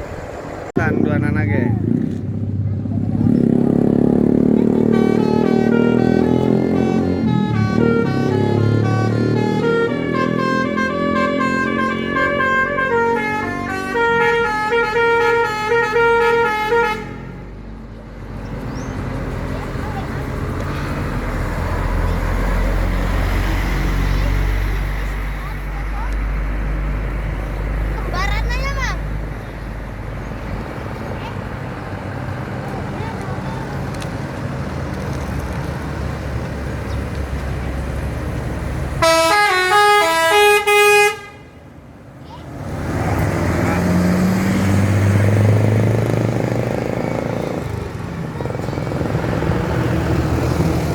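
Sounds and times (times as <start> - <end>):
engine and road noise: 0.0 - 50.9
musical air horns playing a tune: 4.7 - 17.4, 39.0 - 41.5.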